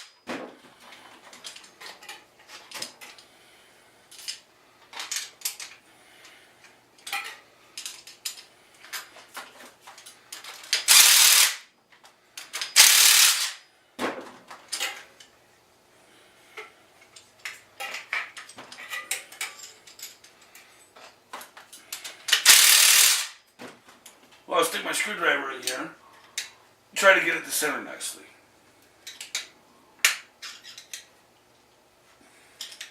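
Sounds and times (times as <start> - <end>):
ratchet wrench clicking: 10.8 - 11.6, 12.5 - 13.6, 22.3 - 23.4
metal tools clinking: 30.4 - 31.1.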